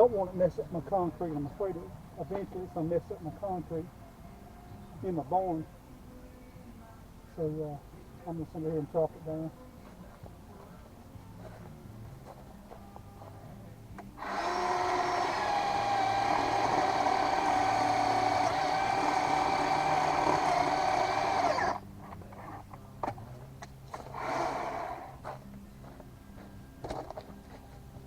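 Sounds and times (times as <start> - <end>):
electric chainsaw motor whine: 14.2 - 21.8, 24.1 - 25.2.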